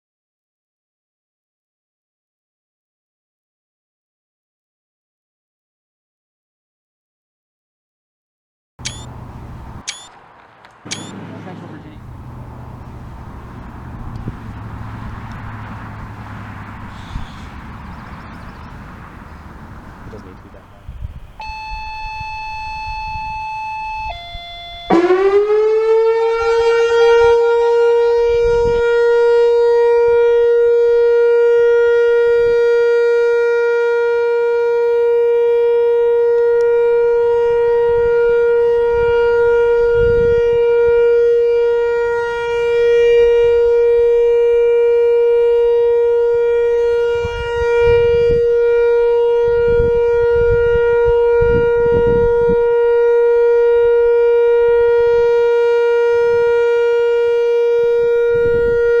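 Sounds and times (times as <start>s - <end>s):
electronic warning siren: 8.8s - 10.2s, 10.9s - 11.2s, 11.8s - 59.0s.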